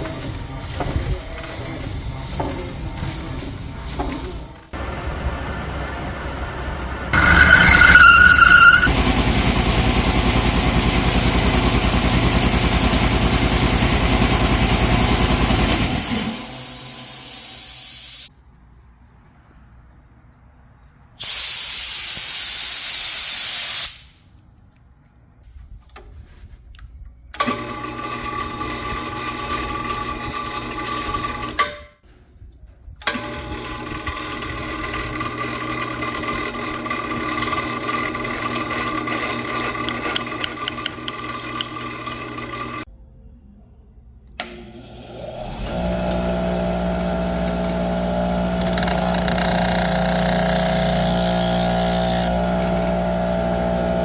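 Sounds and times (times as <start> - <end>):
machine squeal: 0.0 - 4.7, 7.1 - 9.0, 48.6 - 52.4
rough machine noise: 0.0 - 18.3, 44.8 - 54.0
machine humming: 4.8 - 17.3, 45.4 - 54.0
hissing air blowing off: 21.2 - 24.2.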